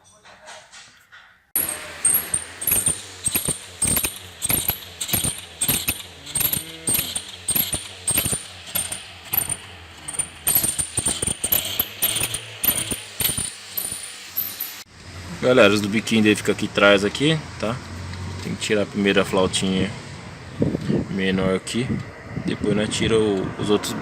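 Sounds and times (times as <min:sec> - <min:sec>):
ratchet wrench clicking: 0:01.6 - 0:14.9.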